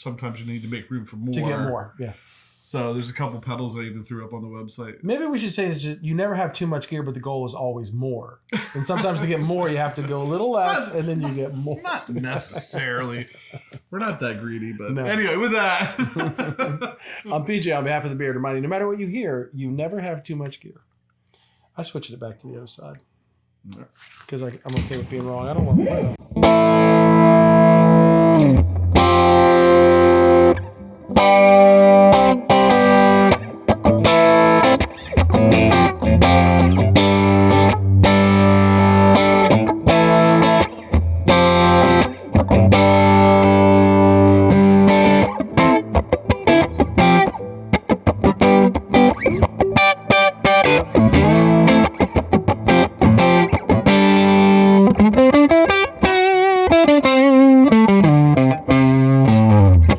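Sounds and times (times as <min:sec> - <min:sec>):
distorted electric guitar: 0:25.6 - 0:59.9.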